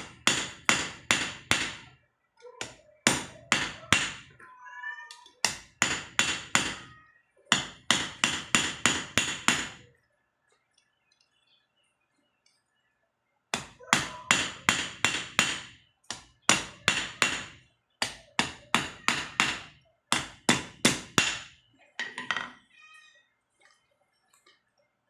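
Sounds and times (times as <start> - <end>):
hammer striking metal: 0.0 - 1.8, 5.4 - 6.9, 13.6 - 21.5.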